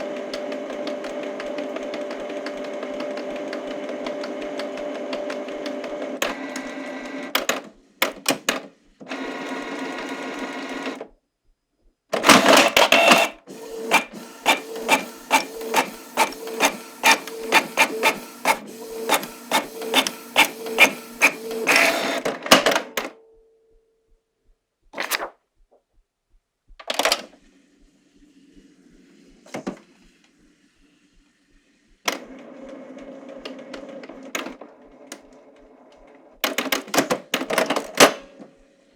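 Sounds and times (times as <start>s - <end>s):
printer mechanical strokes: 12.2s - 22.3s
printer motor whirring: 12.2s - 22.4s
printer clicks: 12.2s - 23.1s.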